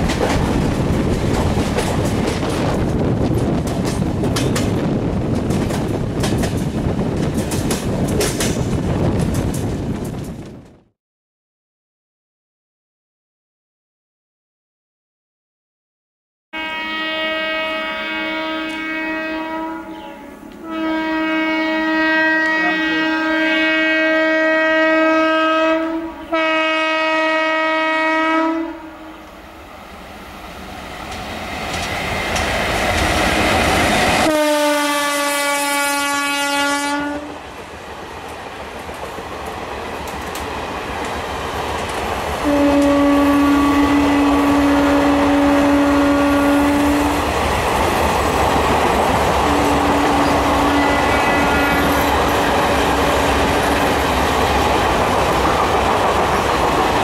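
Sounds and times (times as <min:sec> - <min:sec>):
train coaches rumbling: 0:00.0 - 0:10.9, 0:17.4 - 0:57.0
train horn blasts: 0:16.6 - 0:29.4, 0:34.2 - 0:37.4, 0:42.4 - 0:47.2, 0:49.4 - 0:53.8.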